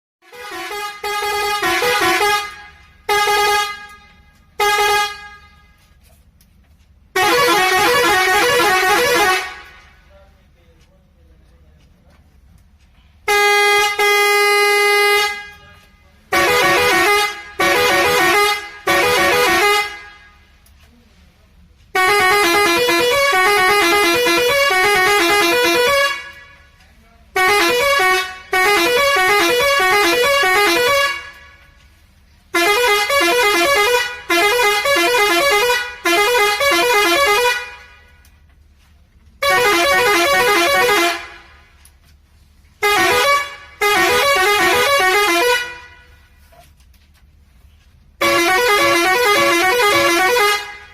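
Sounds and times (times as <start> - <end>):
truck horn blasts: 0.2 - 6.2, 7.0 - 10.1, 13.2 - 20.7, 21.9 - 41.8, 42.6 - 46.8, 48.0 - 50.9
musical horns playing short tunes: 48.2 - 50.9.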